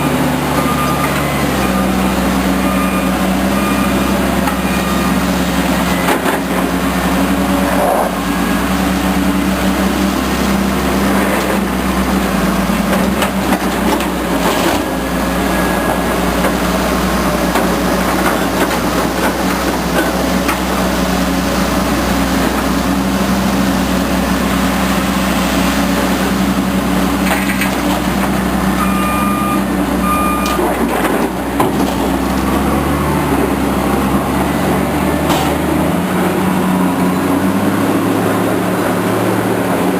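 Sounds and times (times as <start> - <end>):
heavy diesel engines running: 0.0 - 39.9
reversing alarm beeps: 0.5 - 2.0, 2.6 - 6.4, 28.8 - 30.6.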